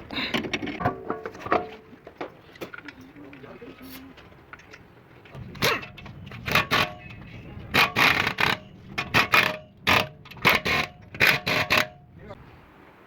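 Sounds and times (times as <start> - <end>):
metal scraping and clinking: 5.4 - 12.0.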